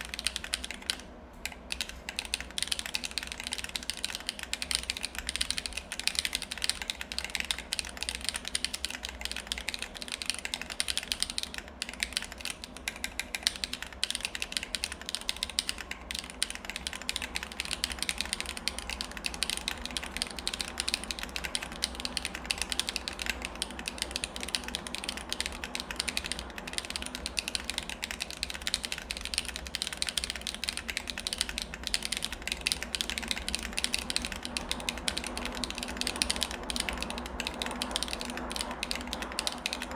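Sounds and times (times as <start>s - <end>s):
low background hum: 0.0s - 39.9s
mechanical keyboard typing: 0.0s - 39.9s.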